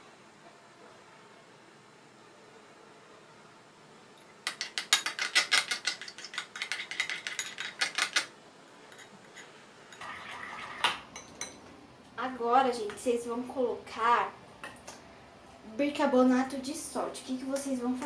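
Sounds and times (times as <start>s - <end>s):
spoon scraping a bowl: 8.9s - 10.9s.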